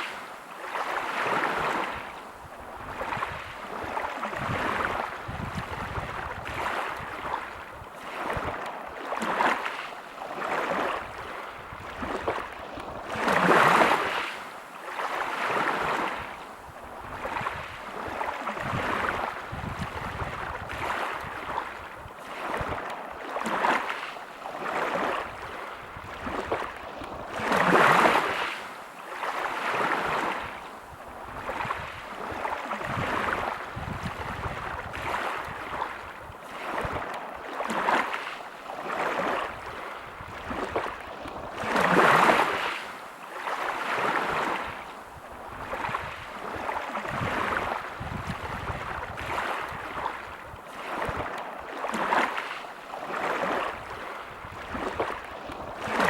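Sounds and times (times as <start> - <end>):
waves breaking on pebble beach: 0.0 - 2.1, 2.9 - 16.3, 17.1 - 30.6, 31.3 - 56.0.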